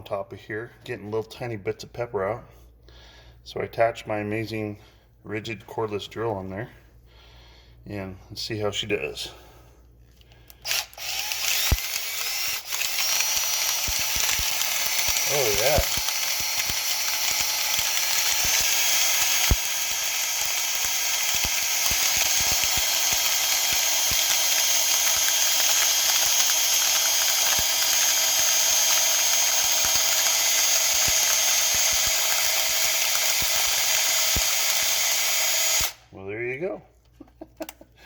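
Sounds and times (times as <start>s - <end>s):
grinder sharp clicks: 10.2s - 36.0s
cordless drill motor whine: 10.6s - 36.0s.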